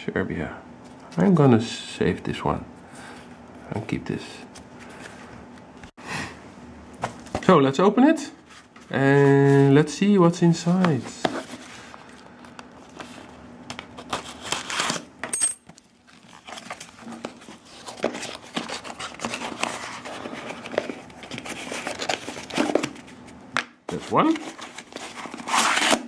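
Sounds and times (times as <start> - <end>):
paper crinkling and tearing: 12.8 - 15.1, 15.9 - 23.0, 24.0 - 26.0.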